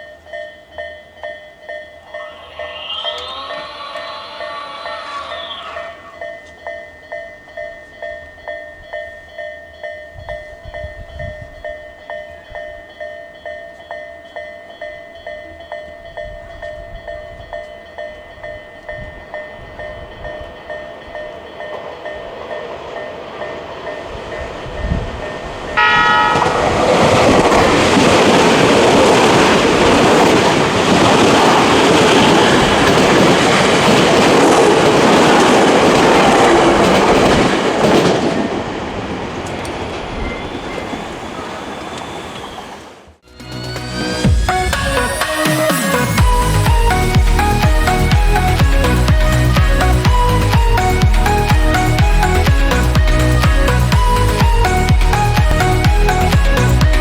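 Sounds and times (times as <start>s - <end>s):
level crossing electronic alarm: 2.0s - 7.0s, 25.8s - 27.9s, 44.5s - 57.0s
train wheels clattering on rails: 5.4s - 42.8s
train horn blast: 25.8s - 27.9s.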